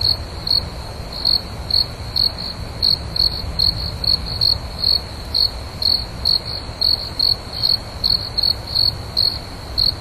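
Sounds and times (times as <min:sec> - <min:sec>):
crickets chirping: 0:00.0 - 0:10.0.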